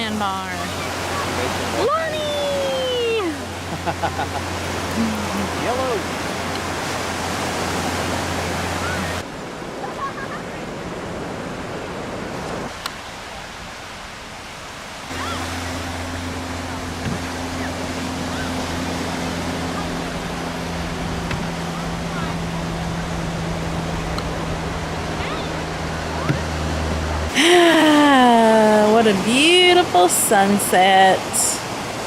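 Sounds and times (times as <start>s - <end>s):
ocean surf washing onto beach: 0.0s - 32.0s
faint distant calls: 15.1s - 27.3s.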